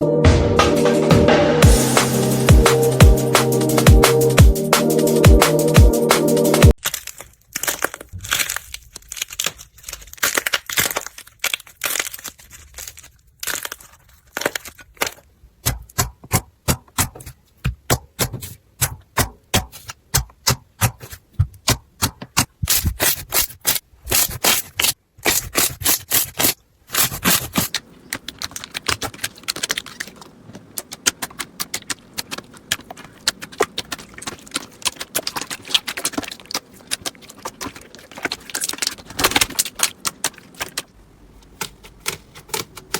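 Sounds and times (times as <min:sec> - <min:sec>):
slime crackling and popping: 0:06.7 - 0:17.1, 0:19.6 - 0:42.9.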